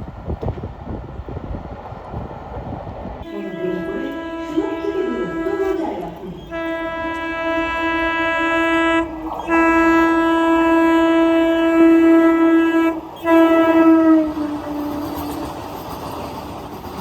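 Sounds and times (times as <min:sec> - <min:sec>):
train rushing by: 0:00.0 - 0:17.0
train horn blasts: 0:03.2 - 0:15.7.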